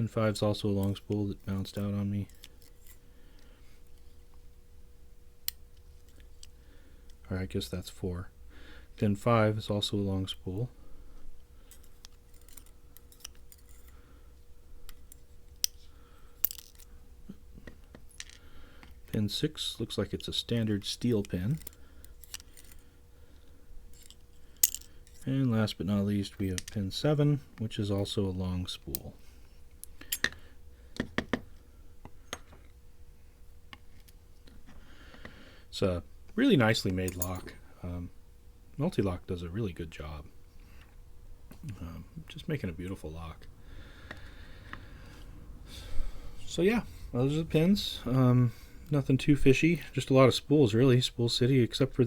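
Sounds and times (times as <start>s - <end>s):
metallic clicks of lock pins: 37.0s - 37.6s.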